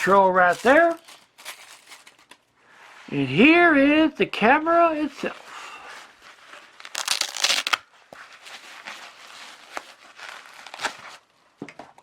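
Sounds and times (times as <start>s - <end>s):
packaging crinkling and rustling: 0.0s - 2.5s, 6.2s - 11.4s.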